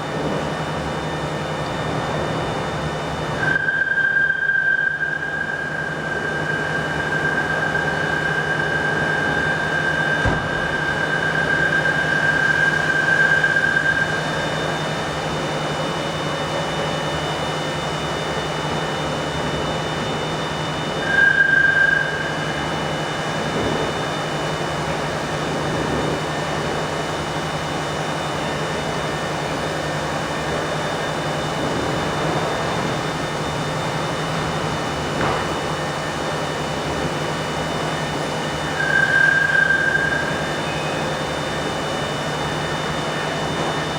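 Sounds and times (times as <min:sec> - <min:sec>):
high steady whine: 0:00.0 - 0:43.9
workshop machinery hum: 0:05.4 - 0:17.2, 0:28.2 - 0:43.9.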